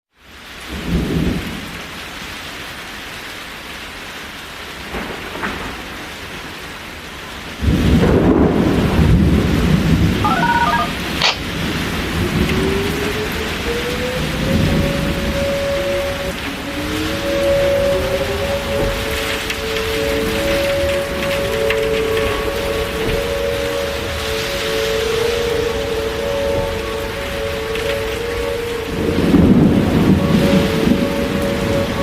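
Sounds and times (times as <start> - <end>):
steady rain: 0.1 - 32.0
rumbling thunder: 7.6 - 10.2, 28.9 - 32.0
tornado siren winding up: 10.2 - 11.5, 12.3 - 32.0.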